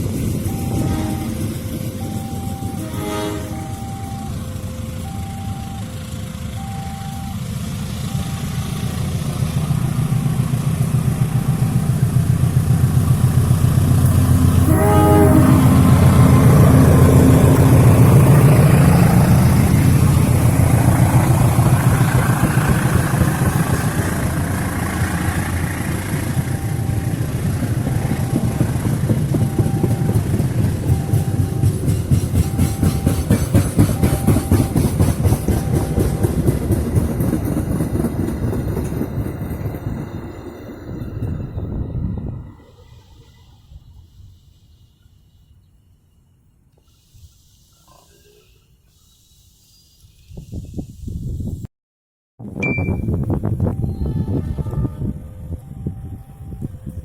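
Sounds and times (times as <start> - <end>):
locomotive engine rumble: 0.0 - 44.5, 52.7 - 57.0
level crossing signal beeping: 0.1 - 10.5, 14.6 - 42.6, 52.6 - 54.4
train horn toot: 0.5 - 4.9, 14.5 - 18.5, 53.7 - 57.0.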